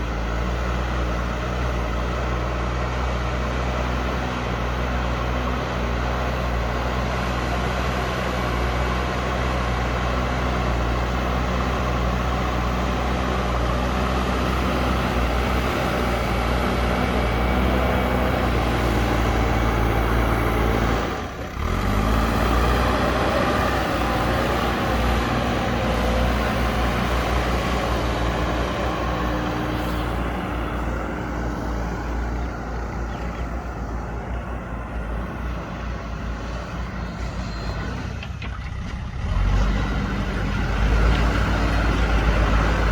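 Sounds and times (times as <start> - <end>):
backhoe diesel engine working: 0.0 - 42.9.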